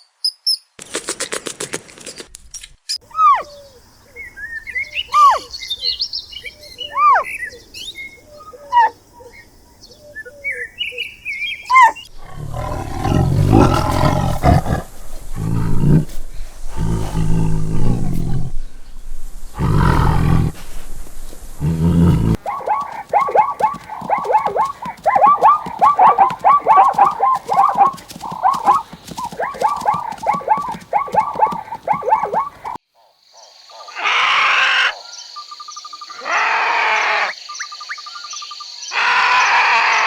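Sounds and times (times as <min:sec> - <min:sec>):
long loud animal calls: 0:11.7 - 0:18.6, 0:19.5 - 0:20.8, 0:21.6 - 0:32.8, 0:33.8 - 0:35.1, 0:36.1 - 0:37.4, 0:38.9 - 0:40.0
low roar-like animal call: 0:12.1 - 0:18.7, 0:19.5 - 0:20.8, 0:21.5 - 0:22.5
flock making short calls: 0:21.7 - 0:32.8.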